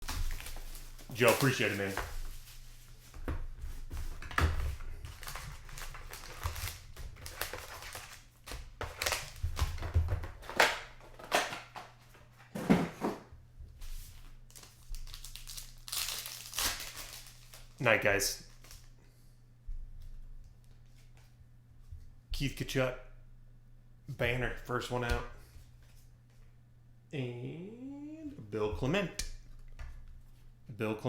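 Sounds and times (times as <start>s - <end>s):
packaging crinkling and rustling: 0.0s - 12.0s, 14.2s - 18.9s.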